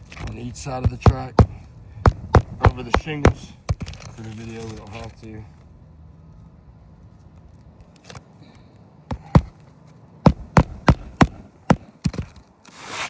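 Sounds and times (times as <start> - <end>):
hammer blows on shingled roof: 0.0 - 4.0, 9.1 - 9.6, 10.2 - 12.4.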